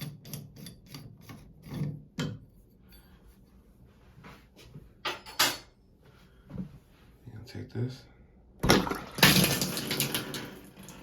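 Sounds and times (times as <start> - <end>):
metal valve parts clicking and knocking: 0.0 - 2.5.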